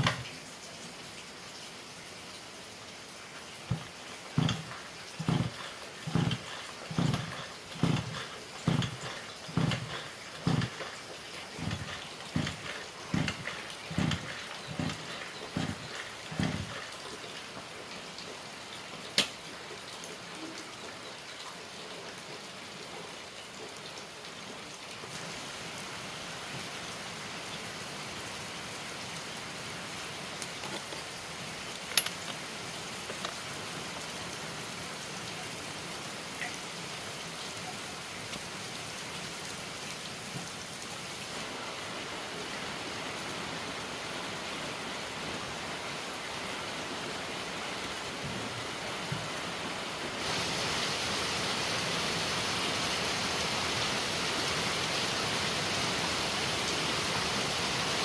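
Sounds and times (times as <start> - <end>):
steady hiss: 49.7 - 58.0.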